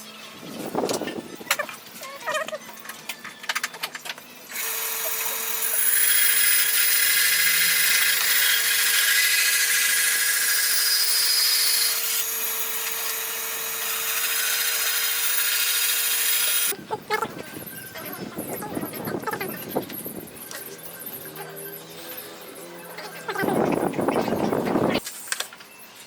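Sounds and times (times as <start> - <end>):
power tool motor hum and hiss: 4.5 - 16.7.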